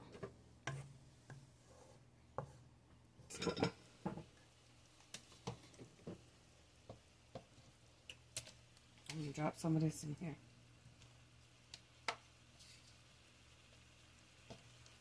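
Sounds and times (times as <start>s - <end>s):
cookware and utensils clicking: 3.3s - 3.8s.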